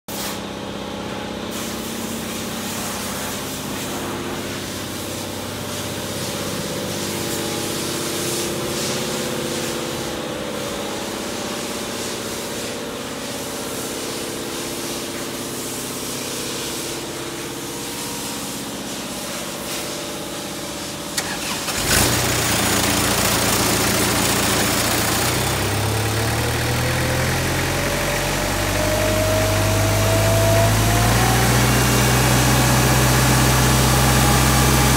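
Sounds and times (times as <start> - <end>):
paver engine running: 20.4 - 34.9
rising whine: 24.6 - 34.9.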